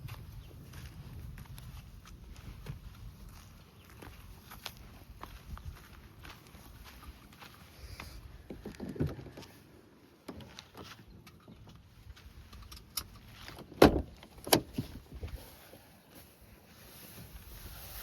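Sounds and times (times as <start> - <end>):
rustling handling noise: 12.2 - 18.0.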